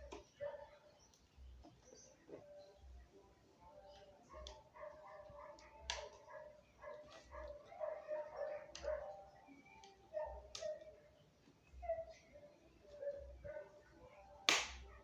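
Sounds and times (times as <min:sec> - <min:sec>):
dog whimpering and yipping: 0:11.8 - 0:12.4.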